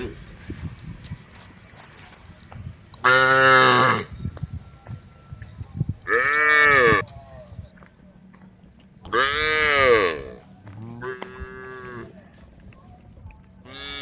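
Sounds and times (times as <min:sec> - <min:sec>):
cows mooing: 0:03.0 - 0:04.1, 0:09.1 - 0:12.2, 0:13.7 - 0:14.0.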